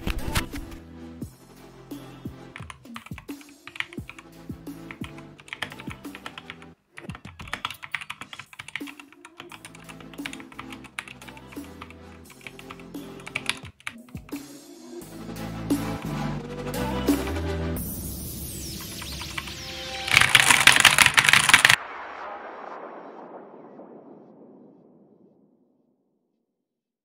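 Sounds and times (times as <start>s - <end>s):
mechanical keyboard typing: 2.6s - 4.2s, 4.9s - 14.4s, 19.0s - 19.5s, 20.1s - 21.8s.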